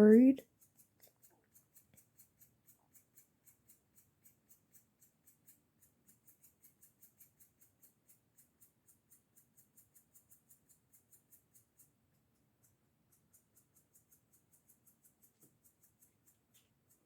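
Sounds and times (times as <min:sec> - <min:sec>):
faint high-pitched ticking: 0:00.0 - 0:17.0.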